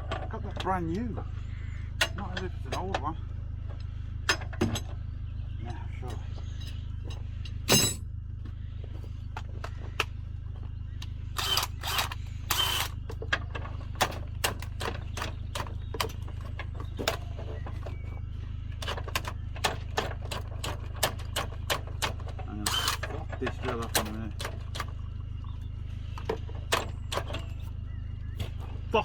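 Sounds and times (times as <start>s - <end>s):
steady low hum: 0.0s - 29.0s
cordless drill rattling bursts: 11.4s - 13.0s.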